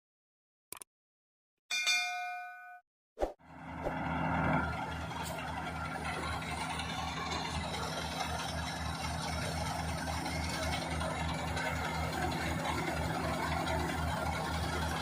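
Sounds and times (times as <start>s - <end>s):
combine harvester droning: 3.4s - 15.0s.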